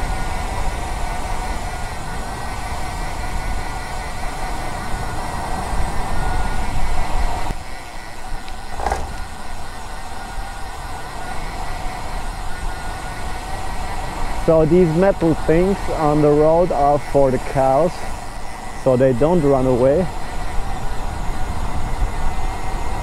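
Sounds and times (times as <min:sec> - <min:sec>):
steady mechanical hum: 0:00.0 - 0:23.0
wind rumble on microphone: 0:00.0 - 0:23.0
bike wheels clattering over grid: 0:08.7 - 0:09.4.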